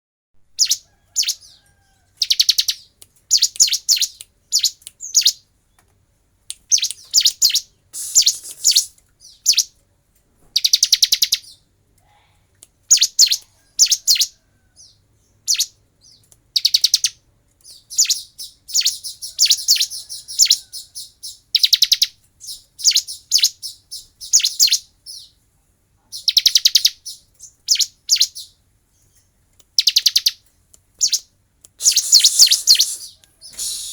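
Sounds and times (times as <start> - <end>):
bird rattling song: 2.2 - 5.4, 6.6 - 9.7, 31.0 - 33.9.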